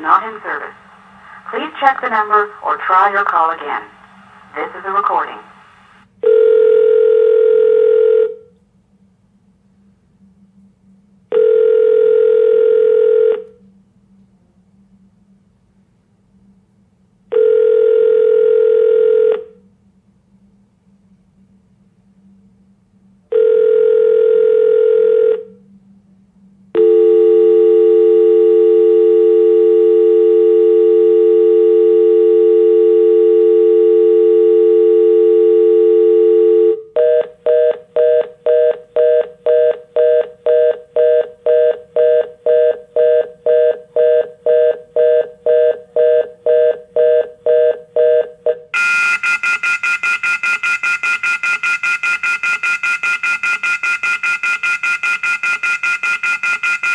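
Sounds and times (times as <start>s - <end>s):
fast busy tone: 0.0s - 6.0s, 27.7s - 56.9s
telephone dial tone: 5.6s - 8.4s, 11.4s - 13.5s, 23.4s - 25.5s, 26.8s - 51.2s
telephone ringback tone: 6.2s - 8.4s, 11.3s - 13.4s, 17.4s - 19.5s, 23.4s - 25.4s, 26.8s - 56.9s.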